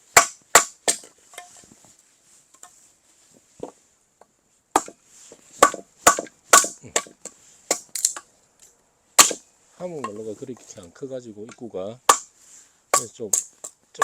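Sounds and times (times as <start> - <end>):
axe splitting wood: 0.1 - 1.5, 4.7 - 5.0, 5.6 - 8.3, 9.2 - 9.4, 11.4 - 12.3, 12.9 - 14.0.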